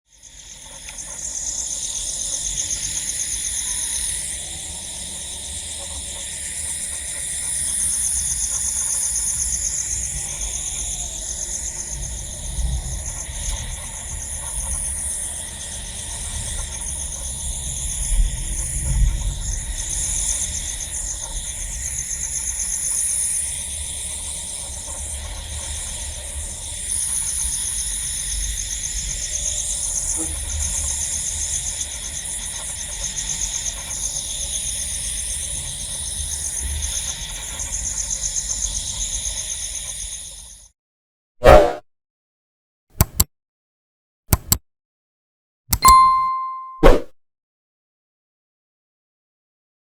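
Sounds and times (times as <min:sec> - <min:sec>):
crickets trilling: 0:00.1 - 0:02.4.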